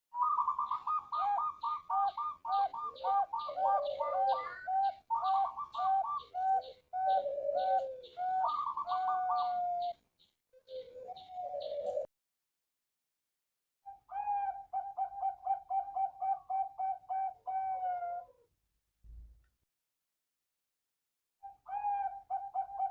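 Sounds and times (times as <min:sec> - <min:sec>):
doves cooing: 0:00.2 - 0:10.0, 0:10.6 - 0:12.1, 0:14.1 - 0:18.5, 0:21.7 - 0:22.9.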